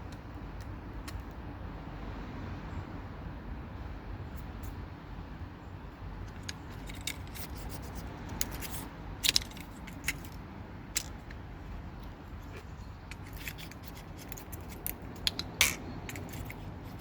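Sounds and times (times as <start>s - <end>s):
small metallic clicks and scrapes: 0.0s - 1.4s, 6.2s - 11.4s, 12.0s - 17.0s
low steady rumble: 0.0s - 17.0s.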